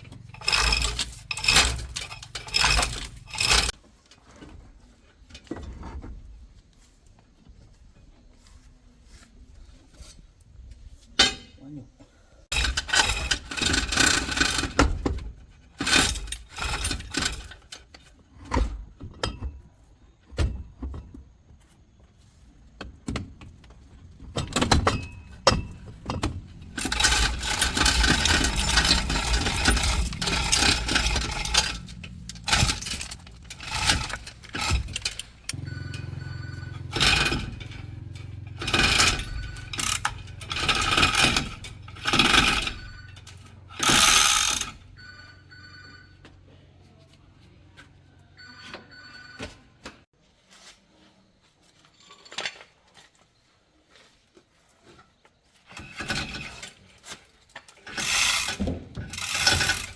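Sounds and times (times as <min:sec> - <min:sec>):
metal tools clanking: 0:00.0 - 0:03.8, 0:12.5 - 0:18.0, 0:23.6 - 0:44.9, 0:55.7 - 0:59.9.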